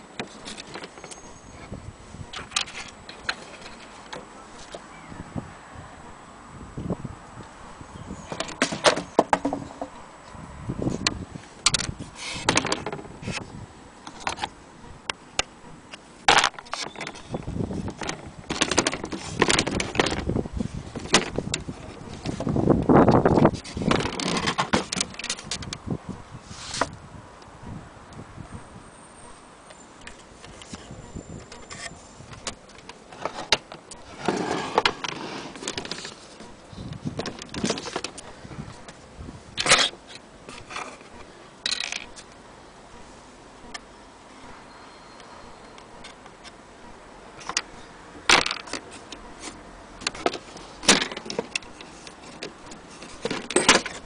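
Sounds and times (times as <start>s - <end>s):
loud scrape: 12.0s - 12.6s, 26.4s - 26.9s, 34.1s - 36.4s.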